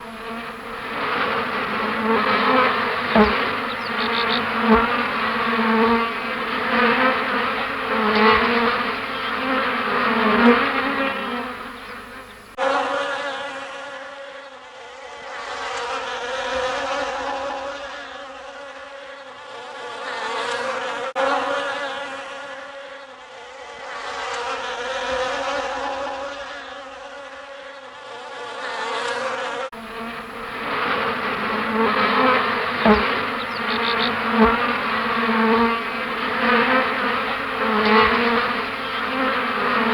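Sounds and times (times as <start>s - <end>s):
bees buzzing: 0.0s - 12.6s, 29.8s - 39.9s.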